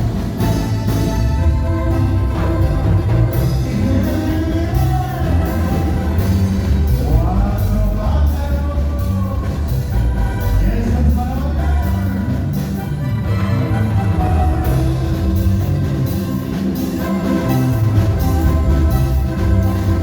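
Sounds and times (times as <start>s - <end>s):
heavy bass: 0.0s - 20.0s
live band music: 0.0s - 20.0s
steady drum beat: 0.0s - 20.0s
person singing: 1.4s - 12.6s.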